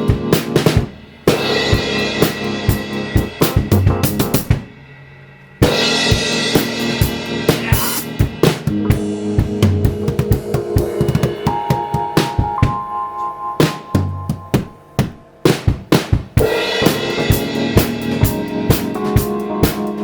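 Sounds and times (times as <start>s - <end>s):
live band playing: 0.0s - 4.6s, 5.7s - 20.0s
drum kit: 0.0s - 20.0s
cymbal crash: 4.2s - 8.4s.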